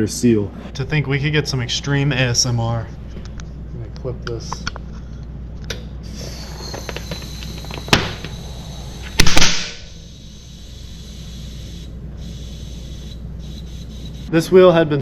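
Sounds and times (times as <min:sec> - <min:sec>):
air hissing into bicycle tyre: 0:06.0 - 0:14.3
sharp crack: 0:06.9 - 0:10.0.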